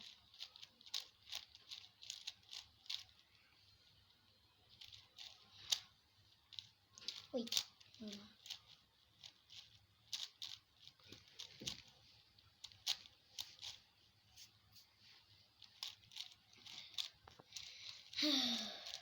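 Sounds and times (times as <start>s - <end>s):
plastic puzzle cube clicking: 0.0s - 3.3s, 4.7s - 5.9s, 6.5s - 11.9s, 12.6s - 13.8s, 15.6s - 19.0s.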